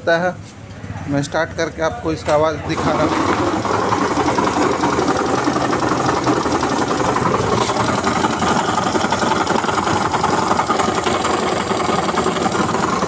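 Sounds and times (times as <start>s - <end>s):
rapid mechanical bearing noise: 0.3s - 13.0s
scooter engine running: 0.7s - 13.0s.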